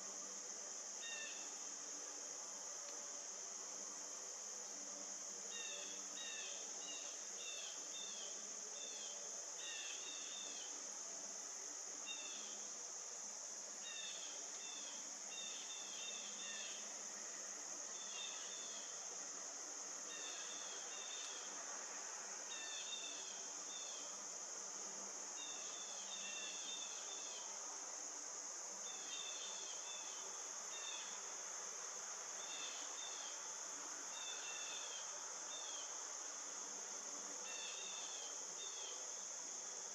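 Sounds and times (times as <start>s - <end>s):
high cricket trill: 0.0s - 39.9s
quick cricket chirps: 0.0s - 39.9s.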